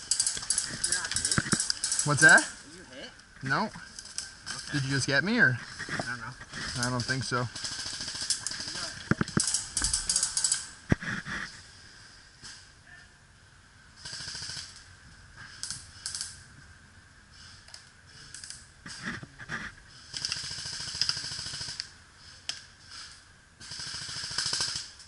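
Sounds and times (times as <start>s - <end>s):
airsoft guns firing bursts: 0.0s - 2.4s, 6.5s - 10.7s, 14.0s - 14.8s, 20.1s - 21.9s, 23.6s - 25.0s.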